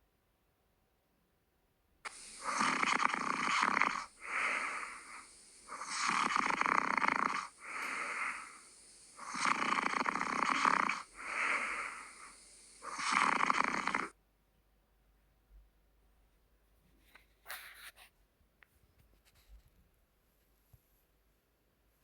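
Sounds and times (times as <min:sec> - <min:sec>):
person snoring: 0:02.1 - 0:14.1.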